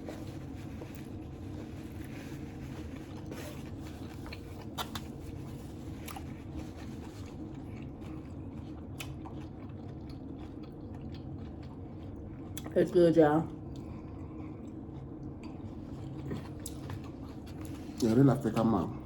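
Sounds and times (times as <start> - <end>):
person chewing food: 0.0 - 12.7, 13.6 - 18.7
low background hum: 0.0 - 19.0
food crunches: 4.0 - 12.7.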